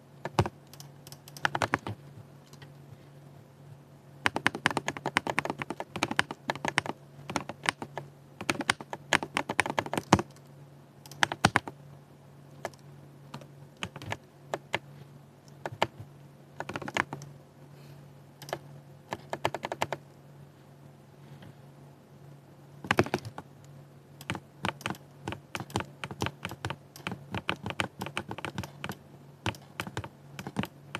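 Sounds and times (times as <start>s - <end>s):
faint low hum: 0.0s - 30.9s
mechanical keyboard clacking: 0.2s - 2.7s, 4.2s - 11.7s, 12.6s - 14.8s, 15.5s - 16.0s, 16.6s - 17.3s, 18.4s - 20.0s, 22.8s - 23.4s, 24.2s - 30.8s.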